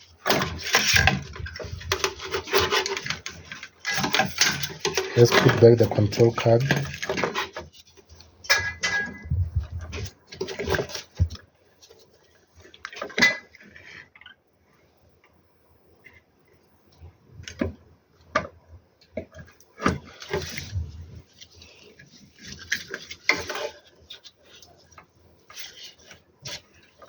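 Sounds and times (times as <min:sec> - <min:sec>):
parts and tools clattering: 0:00.2 - 0:07.8, 0:08.4 - 0:11.4.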